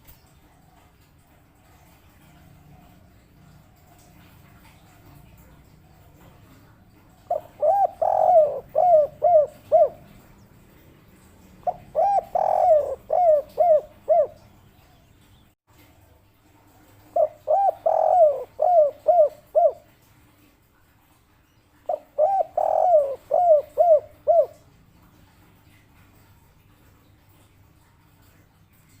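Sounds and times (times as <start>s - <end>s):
dove cooing: 0.3s - 15.2s, 16.9s - 19.9s, 21.8s - 24.8s.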